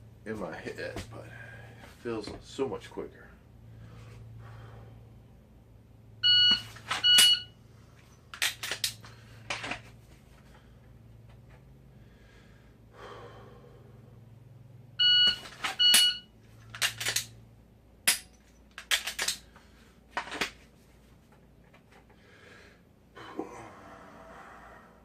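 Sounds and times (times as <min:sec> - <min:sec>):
shot timer beeps: 0:06.2 - 0:07.5, 0:15.0 - 0:16.3.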